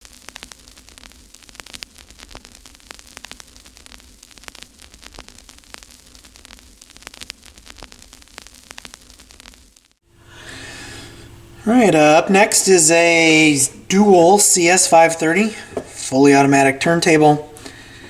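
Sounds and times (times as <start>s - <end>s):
static clicks and pops: 0.0s - 10.0s
low hum and hiss: 10.1s - 18.0s.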